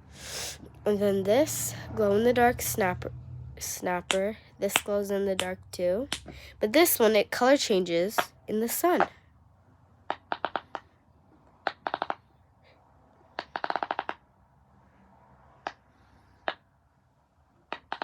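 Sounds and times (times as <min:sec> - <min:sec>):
plastic fidget toy clicking: 0:10.1 - 0:10.9, 0:11.7 - 0:12.2, 0:13.4 - 0:14.2, 0:17.7 - 0:18.0.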